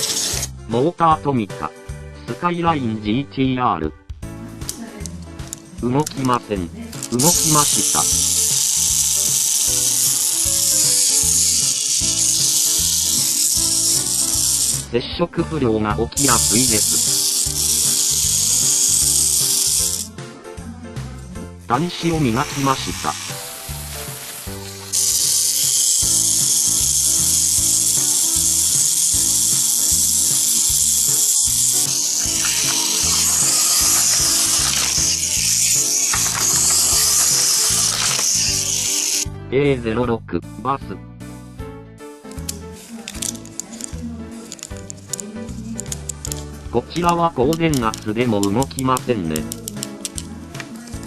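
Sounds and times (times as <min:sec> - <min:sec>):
toy car motor whirring: 0:00.0 - 0:00.5, 0:07.0 - 0:14.9, 0:16.2 - 0:20.1, 0:22.1 - 0:39.2, 0:42.4 - 0:48.7
background music: 0:00.0 - 0:51.0.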